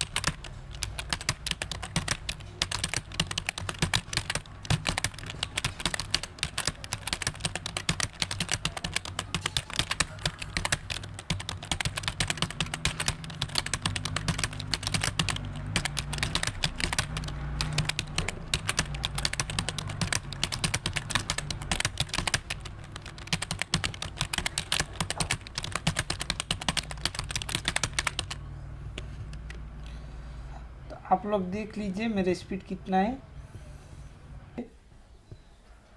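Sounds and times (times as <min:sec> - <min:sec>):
typing on computer keyboard: 0:00.0 - 0:28.4.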